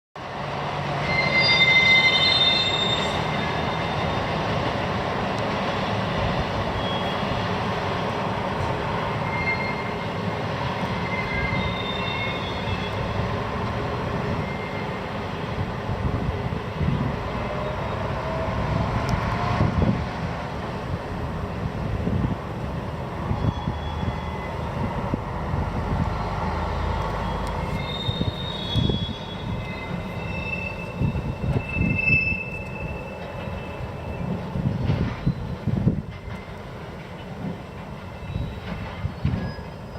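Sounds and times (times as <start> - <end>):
rail cars rumbling: 0.2 - 39.9
freight wagons squealing: 0.9 - 4.5, 6.6 - 7.4, 8.8 - 13.6, 14.2 - 15.2, 23.1 - 25.2, 25.9 - 39.9.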